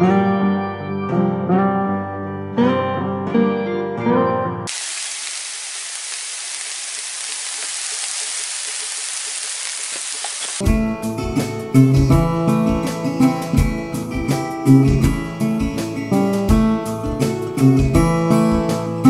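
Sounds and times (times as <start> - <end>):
food sizzling in frying pan: 4.7 - 10.6.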